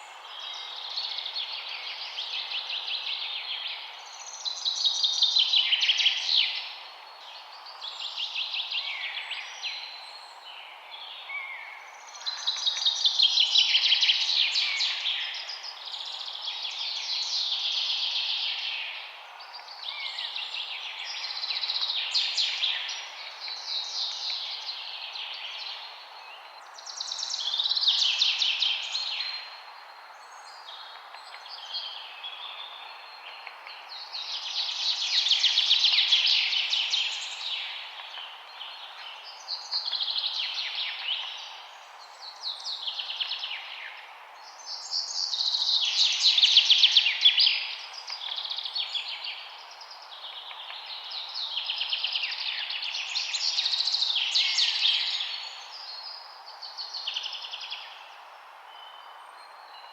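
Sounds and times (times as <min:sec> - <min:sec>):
faint steady hiss: 0:00.0 - 0:59.9.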